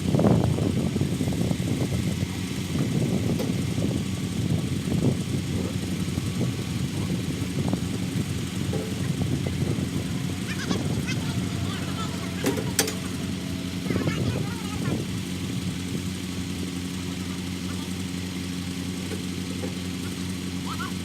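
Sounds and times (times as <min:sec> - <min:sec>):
engine rumbling: 0:00.0 - 0:21.0
knocks and rattles: 0:07.2 - 0:16.2.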